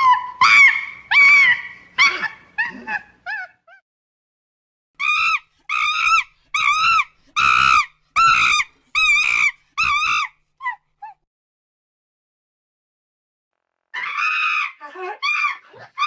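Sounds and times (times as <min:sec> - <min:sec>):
chimpanzee screaming: 0:00.0 - 0:03.6, 0:05.0 - 0:11.2, 0:14.0 - 0:16.0.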